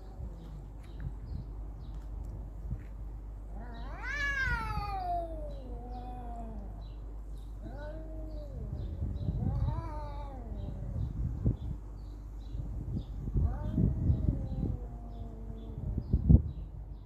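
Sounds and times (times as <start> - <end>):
cats yowling: 3.4 - 11.3, 13.2 - 16.0.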